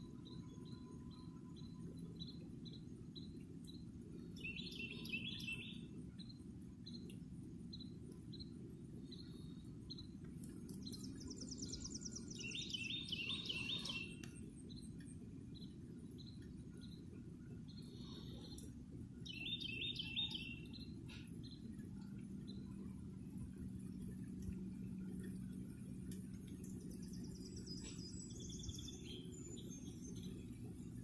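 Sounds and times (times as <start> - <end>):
bird chirping and warbling: 4.4 - 5.9, 10.8 - 14.2, 19.2 - 21.7, 26.9 - 30.4
steady low rumble: 20.6 - 31.0.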